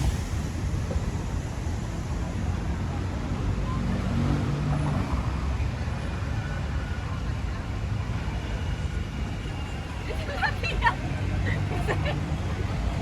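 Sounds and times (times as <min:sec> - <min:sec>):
traffic rumble: 0:00.0 - 0:13.0
faint voices: 0:06.6 - 0:13.0.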